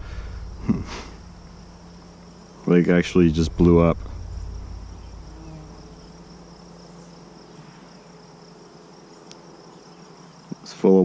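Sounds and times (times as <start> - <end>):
insects droning: 0.0 - 11.0
faint click: 9.2 - 9.4.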